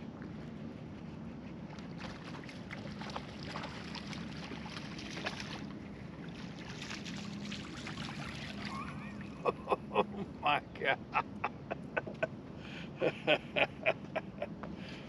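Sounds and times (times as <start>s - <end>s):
fishing boat hum: 0.0s - 15.0s
light clicks and splashy ticks: 1.7s - 9.3s.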